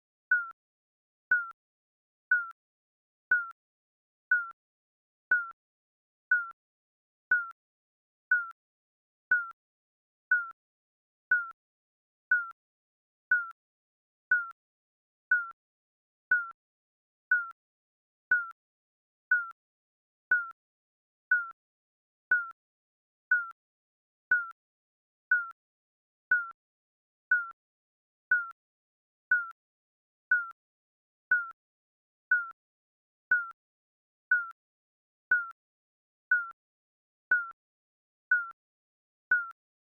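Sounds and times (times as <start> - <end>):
timer beeping: 0.3 - 0.5, 1.3 - 1.5, 2.3 - 2.5, 3.3 - 3.5, 4.3 - 4.5, 6.3 - 6.6, 7.3 - 7.5, 9.3 - 9.5, 12.3 - 12.5, 16.3 - 16.5, 18.3 - 18.5, 19.3 - 19.5, 21.3 - 21.5, 24.3 - 24.5, 26.3 - 26.5, 30.3 - 30.5.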